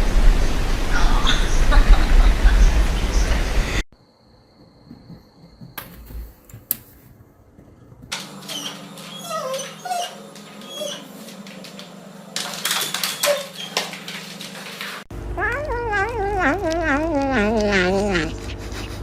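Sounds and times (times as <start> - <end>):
dog whimpering: 8.5 - 11.1, 15.4 - 19.0.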